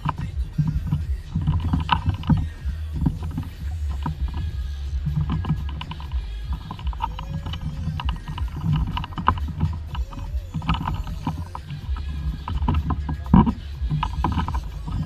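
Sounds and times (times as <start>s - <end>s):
water slapping against boat hull: 0.0s - 15.0s.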